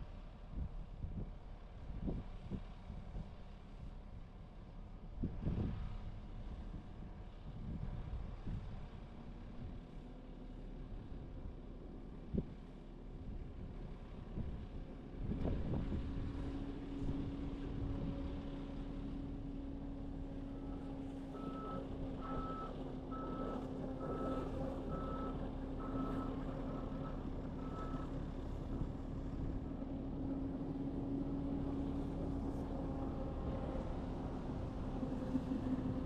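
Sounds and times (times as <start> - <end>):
diesel engine running: 10.8 - 36.0.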